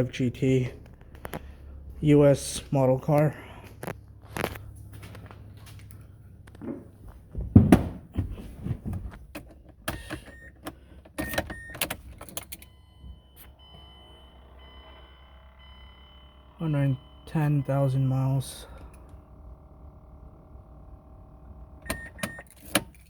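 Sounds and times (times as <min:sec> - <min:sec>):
keys and parts rattling: 0:09.0 - 0:12.8, 0:21.9 - 0:23.0
short beeps: 0:12.6 - 0:18.8
faint steady electronic tone: 0:12.6 - 0:22.5.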